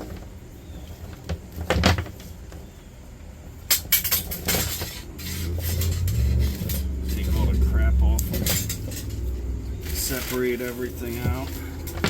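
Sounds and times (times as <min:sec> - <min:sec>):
low steady hum: 0:00.0 - 0:12.0
scrap wire knocking and rustling: 0:03.7 - 0:12.0.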